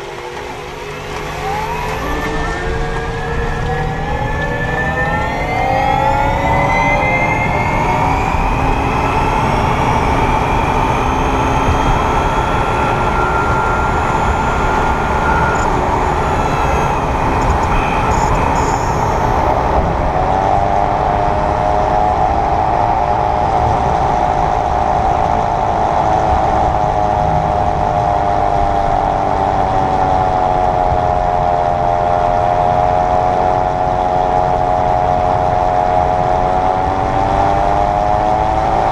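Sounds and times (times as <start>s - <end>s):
electric motor whining: 0.0s - 20.5s
road rumble: 0.0s - 38.9s.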